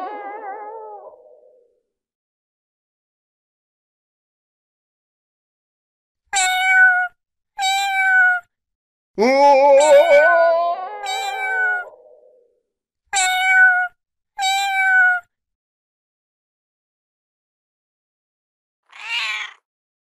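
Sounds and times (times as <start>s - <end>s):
cat meowing: 6.4s - 8.5s, 9.2s - 12.3s, 13.2s - 15.3s, 18.9s - 19.7s.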